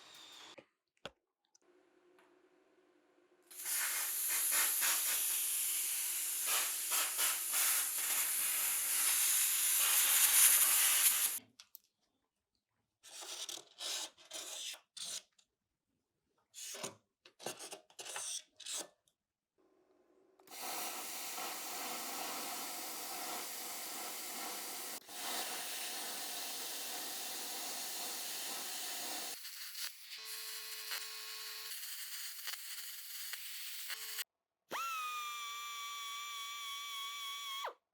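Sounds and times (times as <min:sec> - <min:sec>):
plasma cutter hissing: 0:03.5 - 0:11.4.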